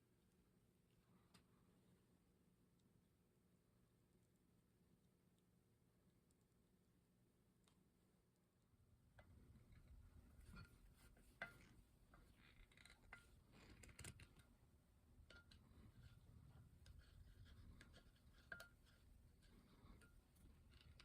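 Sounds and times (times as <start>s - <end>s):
light rubbing: 15.2s - 21.0s.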